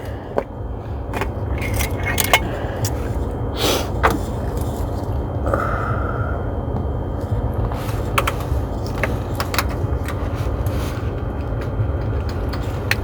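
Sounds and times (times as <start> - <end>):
steady low rumble: 0.0 - 13.0
tools clicking and tapping: 1.2 - 3.0, 11.2 - 13.0.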